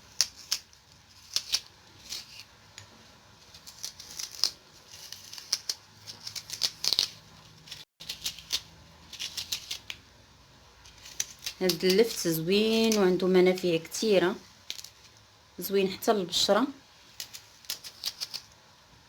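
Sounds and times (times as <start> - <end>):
knife scraping raw turnip: 3.4 - 10.0, 10.8 - 13.1.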